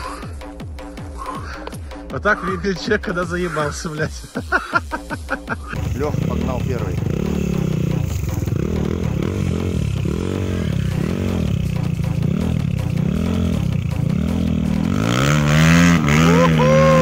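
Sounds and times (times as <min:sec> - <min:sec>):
motorcycle engine revving: 0:05.7 - 0:17.0.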